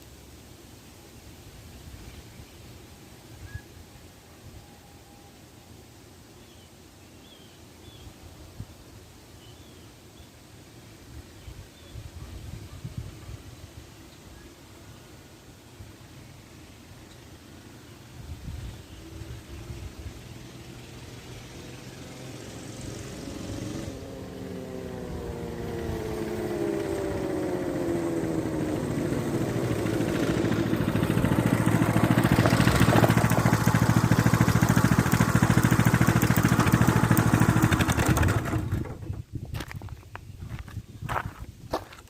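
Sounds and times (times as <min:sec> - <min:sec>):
mini bike engine running: 0:19.5 - 0:39.2.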